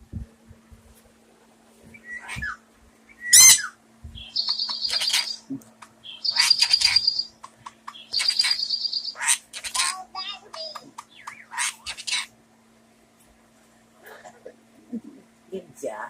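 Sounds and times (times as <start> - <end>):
bird whistling: 1.9 - 5.4, 6.0 - 7.3, 7.9 - 9.4
harsh buzzy bird calls: 1.9 - 12.5.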